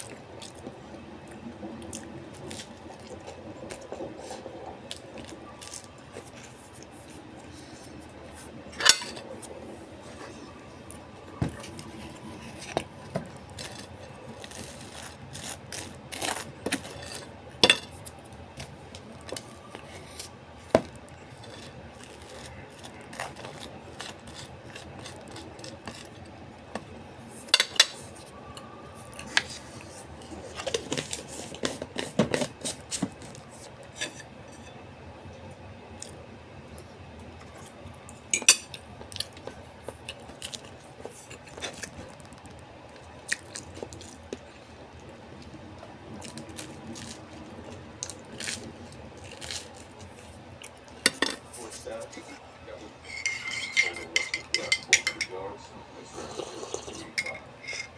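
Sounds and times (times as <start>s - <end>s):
cutlery clinking on a plate: 8.7s - 9.3s, 16.7s - 18.0s, 27.5s - 28.0s, 53.1s - 55.4s.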